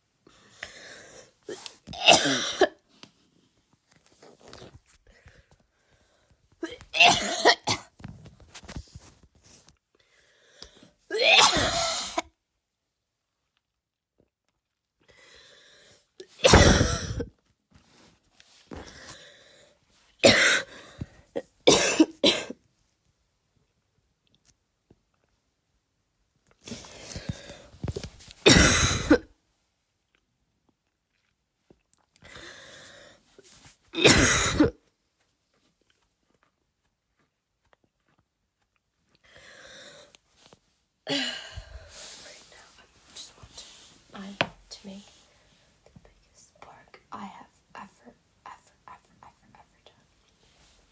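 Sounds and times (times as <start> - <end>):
person coughing harshly: 2.0 - 2.8, 6.6 - 7.9, 11.1 - 12.2, 16.4 - 17.3, 20.2 - 20.7, 21.7 - 22.6, 28.4 - 29.3, 34.0 - 34.8
noisy breath in: 39.3 - 40.2.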